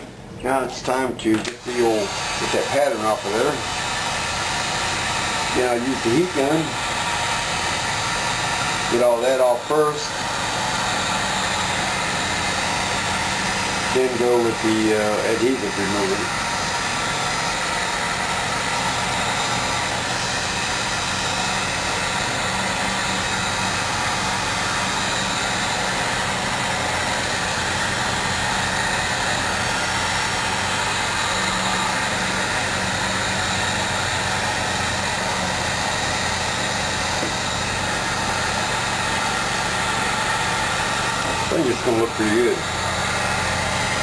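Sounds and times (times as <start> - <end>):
heat gun fan blowing air: 0.0 - 44.0.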